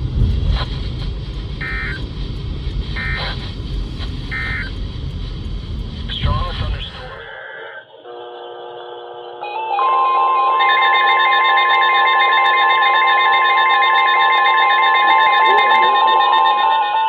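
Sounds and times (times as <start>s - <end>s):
alternating beeping tones: 0.2s - 4.8s, 10.7s - 17.0s
steady electronic alert tones: 1.6s - 2.0s, 3.0s - 3.4s, 4.3s - 4.8s, 10.7s - 17.0s.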